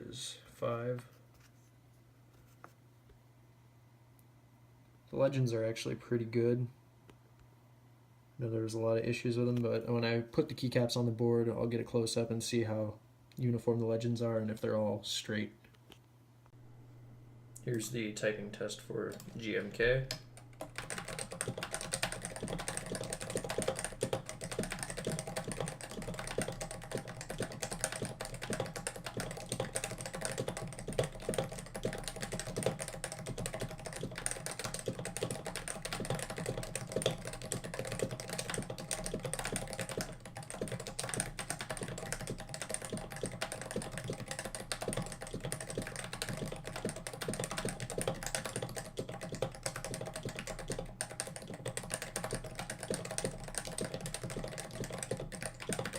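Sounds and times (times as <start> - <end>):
fast typing on a keyboard: 19.1 - 55.9.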